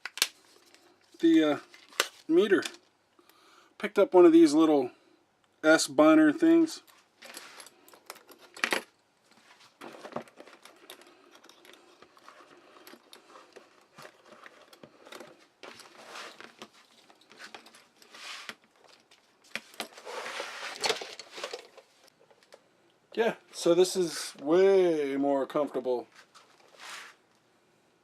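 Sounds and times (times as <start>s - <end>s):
leather pouch rustling: 9.3s - 22.1s
metallic clicks and jingles: 10.4s - 15.9s.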